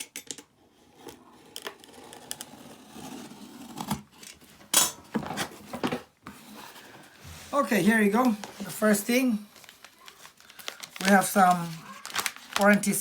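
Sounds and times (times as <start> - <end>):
cardboard tearing and rustling: 9.5 - 13.0.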